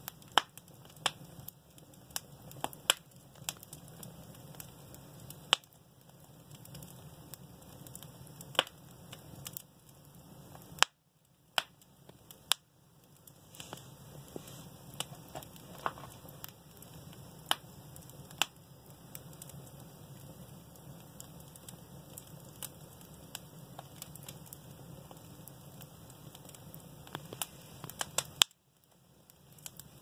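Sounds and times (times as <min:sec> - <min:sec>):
low hiss of burning: 0:00.0 - 0:30.0
sharp pops of burning wood: 0:00.0 - 0:30.0
wood fire crackling: 0:00.0 - 0:30.0.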